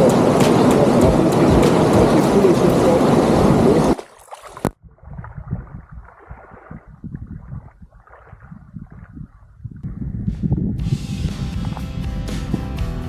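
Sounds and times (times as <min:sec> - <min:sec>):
water lapping and gurgling: 0:00.0 - 0:10.2.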